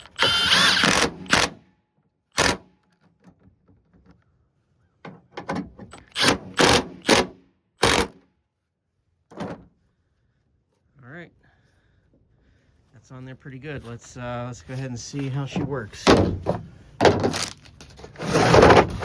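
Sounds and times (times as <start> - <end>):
cordless impact wrench: 0.0 - 1.6, 2.3 - 2.7, 5.9 - 8.2.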